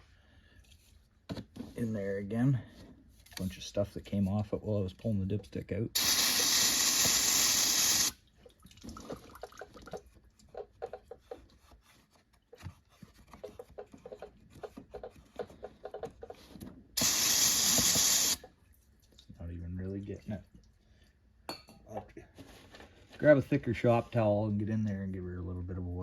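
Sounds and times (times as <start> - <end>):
aerosol spray hiss: 6.0 - 8.2, 17.0 - 18.4
solvent dripping and trickling: 6.0 - 10.3.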